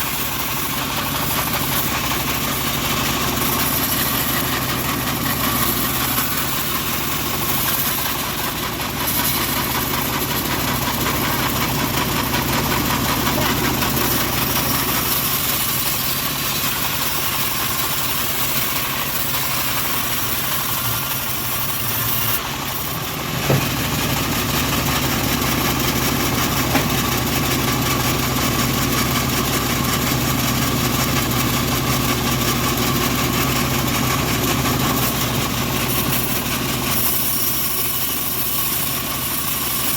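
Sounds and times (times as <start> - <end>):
sawmill engine running: 0.0 - 39.9
sharp knock: 23.4 - 23.9, 26.7 - 27.0.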